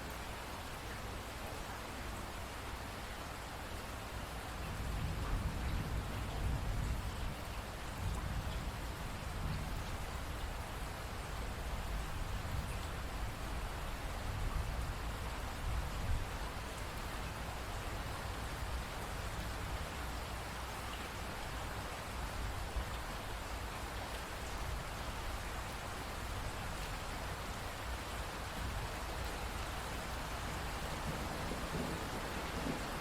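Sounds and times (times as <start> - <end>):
steady rain patter: 0.0 - 33.0.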